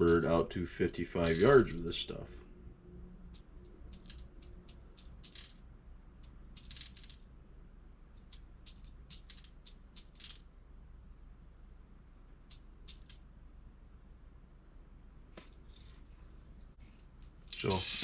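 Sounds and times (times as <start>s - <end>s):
small hard components rattling: 0.0s - 0.3s, 1.2s - 1.8s, 3.3s - 5.6s, 6.5s - 7.2s, 8.6s - 10.5s, 17.5s - 18.0s.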